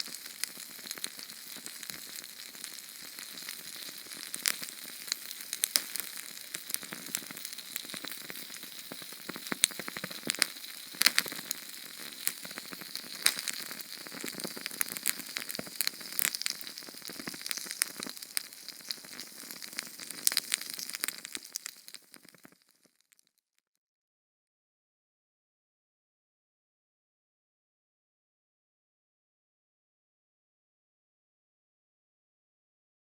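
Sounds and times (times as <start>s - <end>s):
fuel burning with sizzling hiss: 0.0s - 22.9s
sharp crackles and pops: 0.0s - 23.6s.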